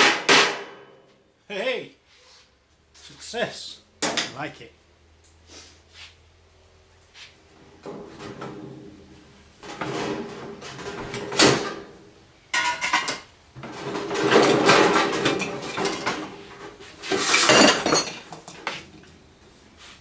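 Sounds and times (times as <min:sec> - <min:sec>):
sheet metal clattering and scraping: 0:07.6 - 0:12.0, 0:12.6 - 0:19.1.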